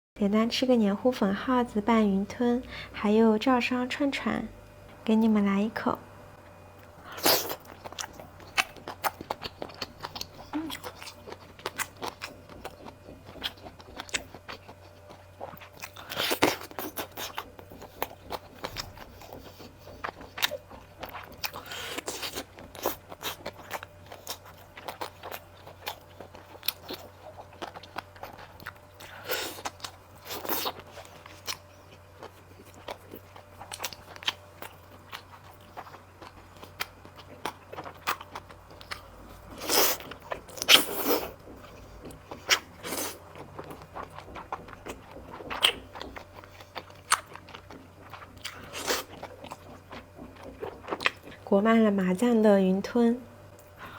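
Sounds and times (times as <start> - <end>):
wet chewing and mouth smacking: 6.8 - 51.5
bites and slurps: 32.6 - 51.4.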